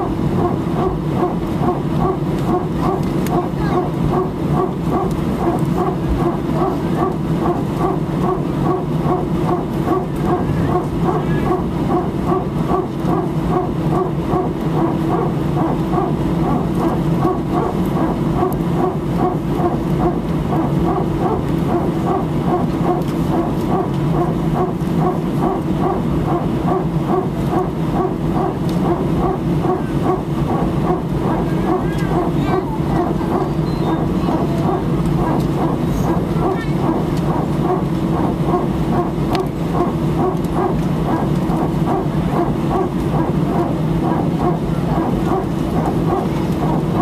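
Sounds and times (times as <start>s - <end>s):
rhythmic pulsing bark: 0.0s - 47.0s
steady low hum: 0.0s - 47.0s.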